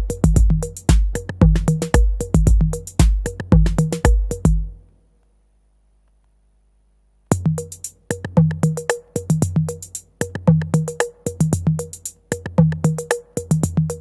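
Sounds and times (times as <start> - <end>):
booming kick drums: 0.0 - 4.7
quick hi-hats: 0.0 - 4.7, 7.3 - 14.0.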